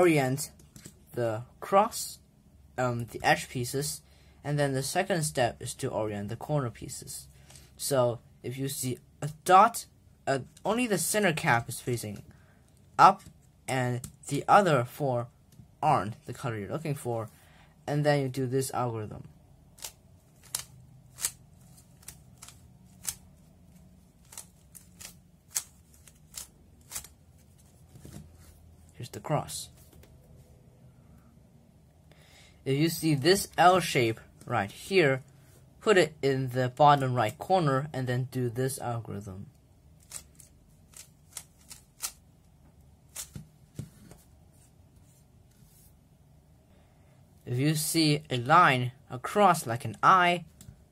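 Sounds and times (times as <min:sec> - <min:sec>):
faint steady hum: 0:00.0 - 0:50.9
puzzle cube layers clicking: 0:19.8 - 0:23.2, 0:24.2 - 0:27.2, 0:40.0 - 0:42.2.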